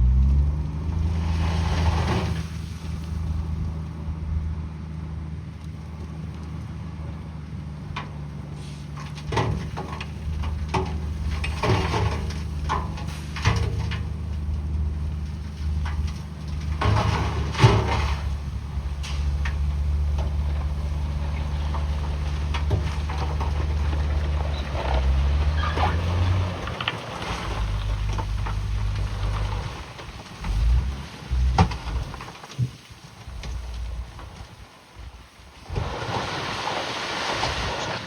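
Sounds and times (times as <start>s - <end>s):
bulldozer diesel engine: 0.0s - 32.5s, 33.2s - 38.0s
rock and metal clanking: 9.0s - 32.8s.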